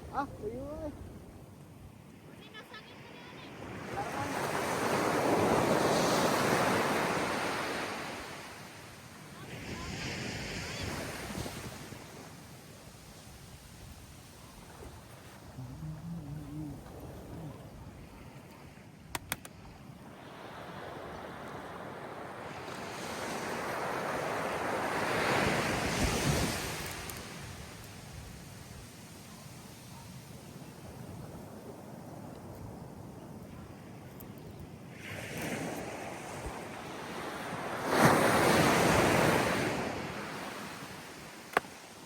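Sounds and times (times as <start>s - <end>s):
sharp clicks: 19.1s - 19.6s.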